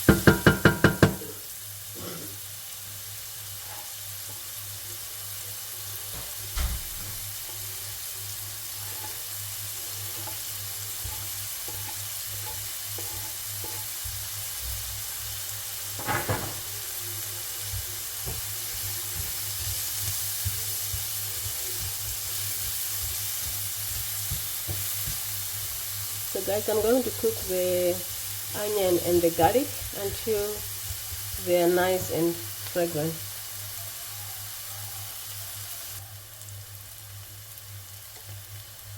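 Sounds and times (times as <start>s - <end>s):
utensil knocking against pan: 0.0s - 1.4s
onion and garlic sizzling in pan: 0.0s - 38.9s
utensil stirring in pan: 0.0s - 38.9s.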